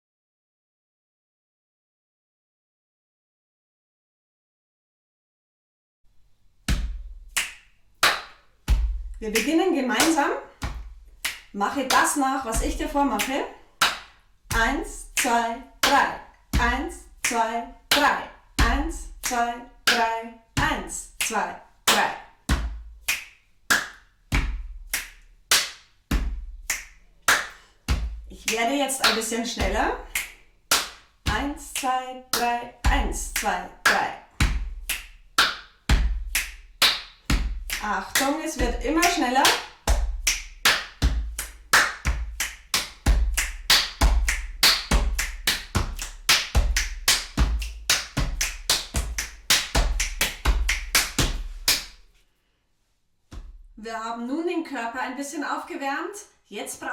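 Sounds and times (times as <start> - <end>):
hand claps: 6.7 - 52.0.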